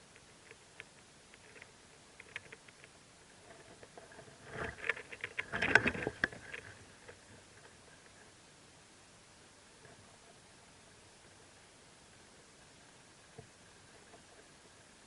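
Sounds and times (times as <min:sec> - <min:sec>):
rustling and scratching in nest: 0:00.2 - 0:08.3.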